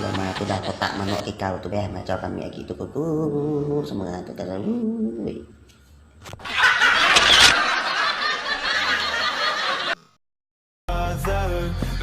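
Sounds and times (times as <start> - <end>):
loud burst of laughter: 6.4 - 10.0.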